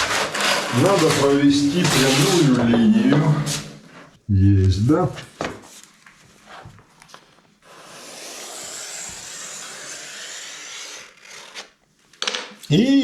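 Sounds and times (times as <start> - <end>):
scratching line on floor board: 0.0 - 2.7, 7.6 - 11.8.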